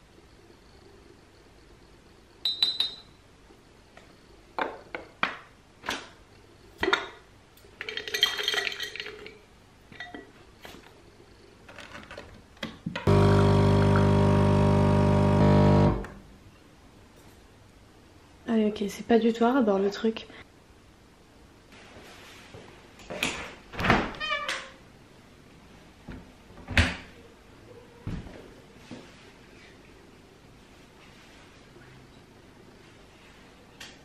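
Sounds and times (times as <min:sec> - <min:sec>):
electric appliance buzzing: 0:13.1 - 0:16.2.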